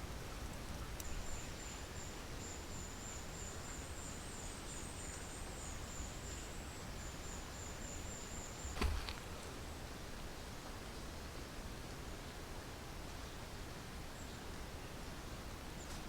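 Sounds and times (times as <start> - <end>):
outdoor hiss: 7.4 - 10.4.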